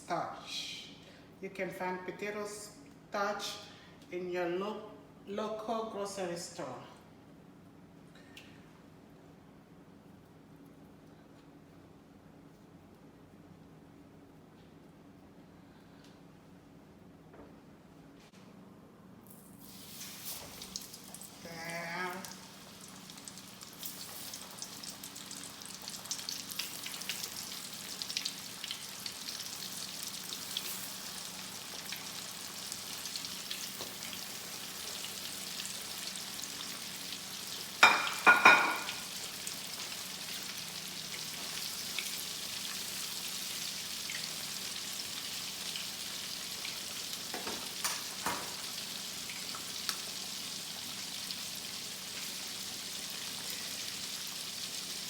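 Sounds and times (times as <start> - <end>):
chicken frying in oil: 19.6 - 55.0.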